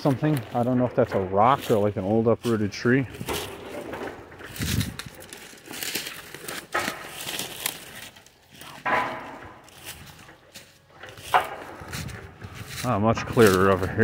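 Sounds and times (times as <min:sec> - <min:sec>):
footsteps crunching dry leaves: 0:01.4 - 0:14.0.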